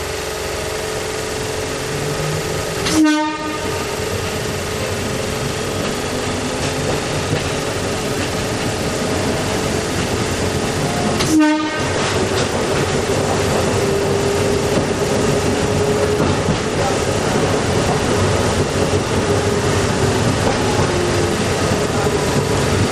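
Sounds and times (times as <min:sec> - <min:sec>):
streetcar motor and wheel noise: 0:00.0 - 0:22.9
streetcar horn toots: 0:02.8 - 0:04.0, 0:11.1 - 0:12.4.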